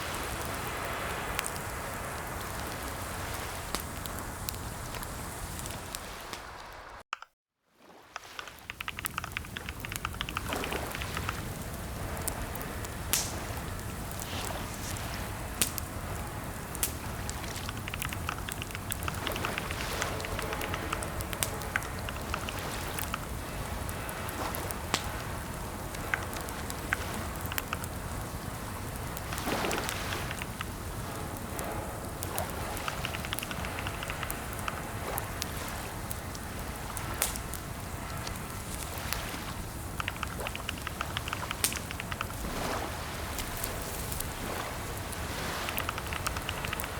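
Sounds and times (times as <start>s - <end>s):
rain-like hiss: 0.0s - 7.1s, 7.8s - 46.9s
sharp clicks and crackles: 0.2s - 7.4s, 8.1s - 46.9s.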